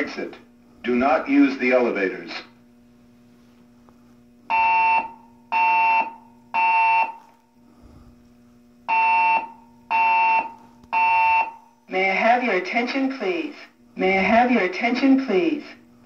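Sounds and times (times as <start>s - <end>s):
fire alarm beeps: 4.5s - 7.3s, 8.9s - 11.7s.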